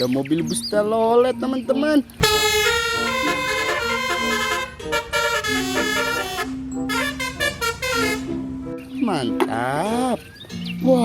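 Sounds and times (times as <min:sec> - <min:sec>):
multi-tone bus horn tune: 0:02.2 - 0:08.8.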